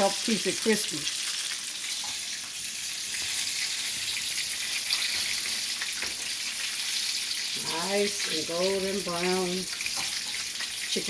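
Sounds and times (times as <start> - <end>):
oil sizzling in a skillet: 0.0 - 11.0.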